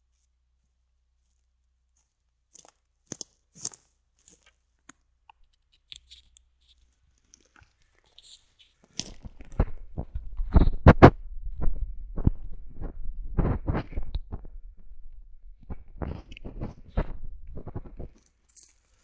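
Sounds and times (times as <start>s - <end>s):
faint crackles of twigs: 0.0s - 10.6s, 15.6s - 19.0s.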